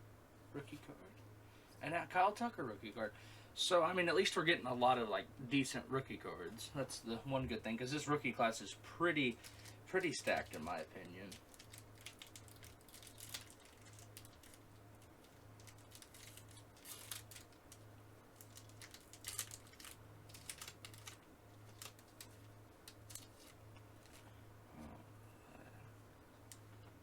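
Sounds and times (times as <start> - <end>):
faint low hum: 0.0 - 27.0
trading cards clicking and rustling: 9.2 - 17.8, 18.4 - 24.3.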